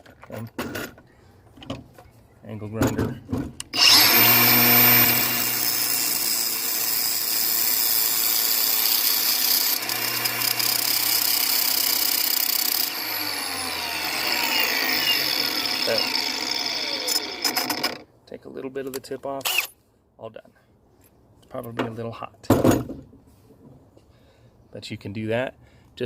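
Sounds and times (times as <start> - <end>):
angle grinder grinding steel: 3.8 - 18.0.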